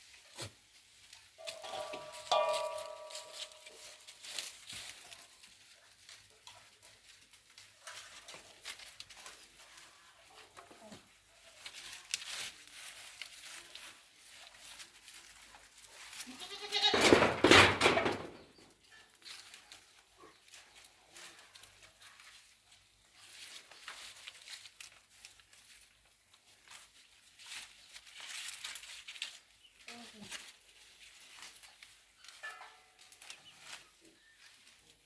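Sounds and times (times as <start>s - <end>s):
faint clicks and rustles: 0.1s - 17.2s, 17.8s - 35.0s
goat bleating: 16.2s - 17.1s.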